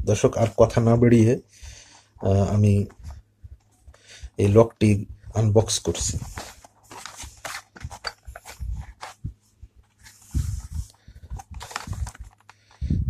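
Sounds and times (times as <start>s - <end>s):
packaging rustling: 6.0s - 12.9s.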